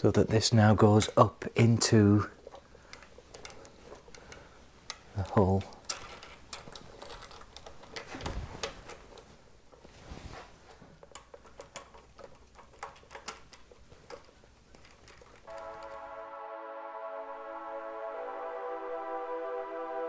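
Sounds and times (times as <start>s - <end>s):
metal washers clicking: 2.9s - 8.1s, 11.1s - 15.6s.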